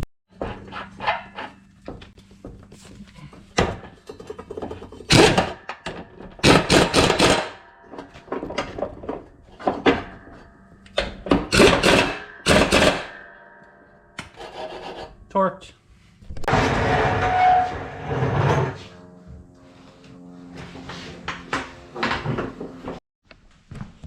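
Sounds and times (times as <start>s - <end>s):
metal clunks and scraping of tools: 0.3s - 6.5s, 7.8s - 12.5s, 16.3s - 23.0s.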